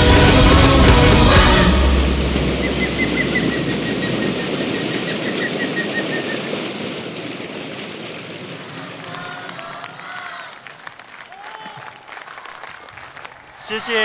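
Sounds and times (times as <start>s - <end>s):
low music note: 0.0s - 4.3s
audience applauding: 0.0s - 14.0s.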